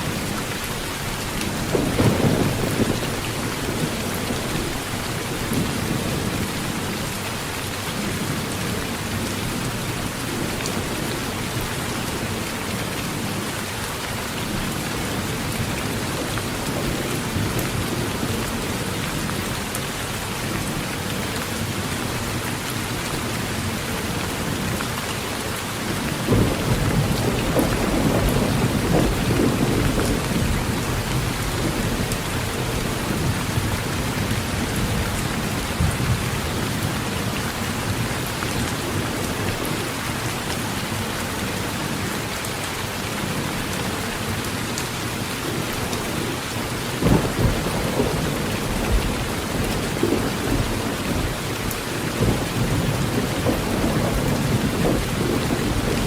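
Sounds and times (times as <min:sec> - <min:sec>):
heavy rain on a tin roof: 0:00.0 - 0:56.0
thunder rumbling: 0:01.5 - 0:06.6, 0:26.0 - 0:38.0, 0:46.9 - 0:56.0.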